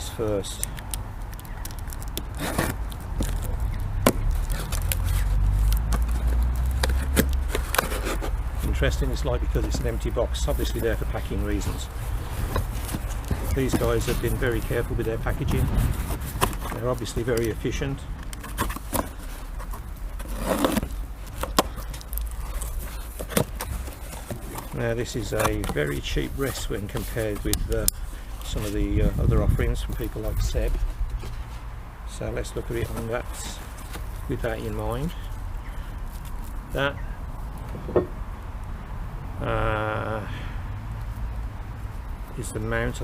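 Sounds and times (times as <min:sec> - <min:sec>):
packaging rustle: 0:00.0 - 0:36.8
cardboard box being opened: 0:01.4 - 0:31.6, 0:32.4 - 0:35.2.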